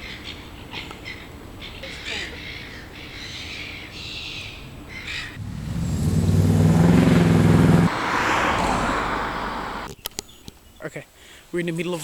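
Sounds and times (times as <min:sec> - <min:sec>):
low engine hum: 0:05.4 - 0:07.9.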